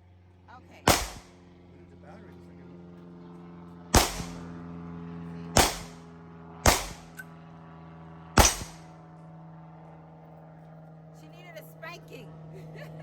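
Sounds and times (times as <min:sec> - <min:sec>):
steady low hum: 0:00.8 - 0:01.9, 0:04.0 - 0:04.8, 0:05.4 - 0:07.4, 0:08.2 - 0:09.0
gunshots: 0:00.9 - 0:01.3, 0:04.0 - 0:04.5, 0:05.6 - 0:06.0, 0:06.6 - 0:07.2, 0:08.4 - 0:08.9.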